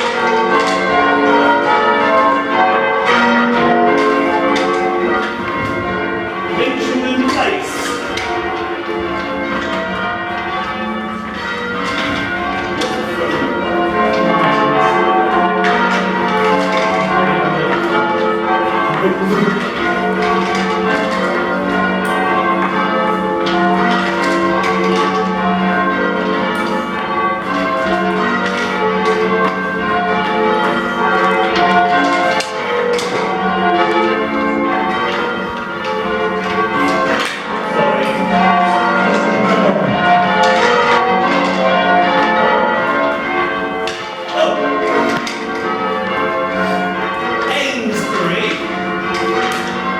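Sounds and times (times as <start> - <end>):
church bells ringing in sequence: 0.0 - 49.9.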